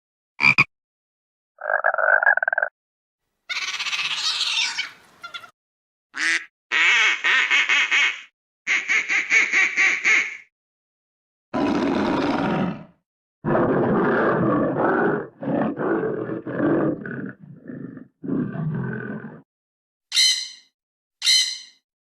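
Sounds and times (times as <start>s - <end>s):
high-pitched animal calls: 3.5s - 5.6s, 20.1s - 21.8s
large animal roaring and growling: 11.6s - 19.5s.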